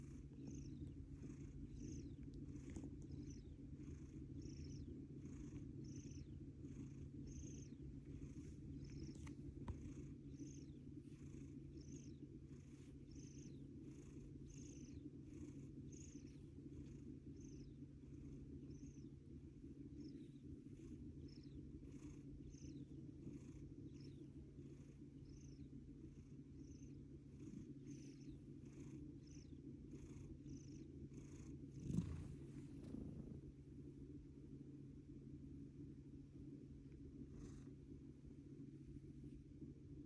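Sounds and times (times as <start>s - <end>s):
cat snoring: 0.0s - 17.0s, 26.7s - 33.6s.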